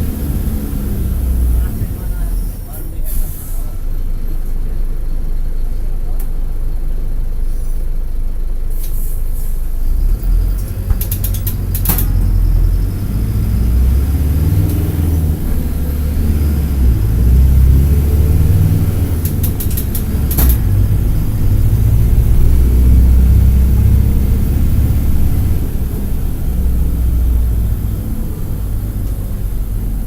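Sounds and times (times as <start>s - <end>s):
bus diesel engine rumble: 0.0s - 30.0s
sharp clicks: 19.2s - 20.7s.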